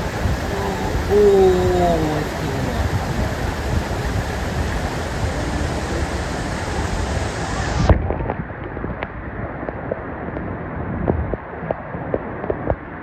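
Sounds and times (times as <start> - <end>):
stream water rushing: 0.0 - 7.9
wind buffeting microphone: 0.0 - 9.0.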